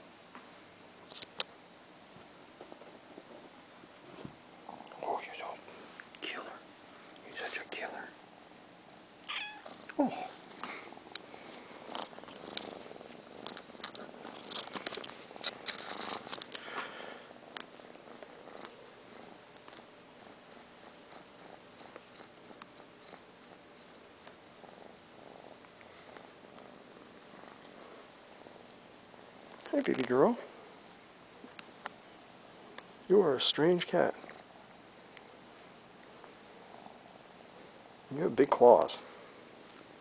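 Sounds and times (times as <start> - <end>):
cat purring: 2.0 - 40.0
rustling: 9.6 - 23.2.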